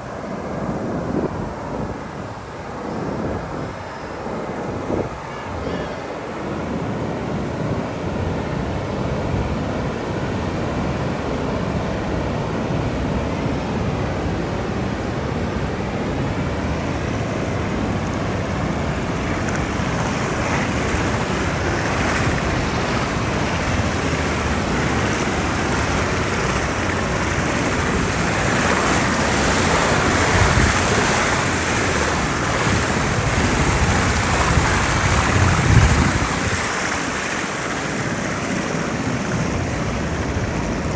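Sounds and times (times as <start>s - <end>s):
ocean waves breaking: 0.0s - 40.9s.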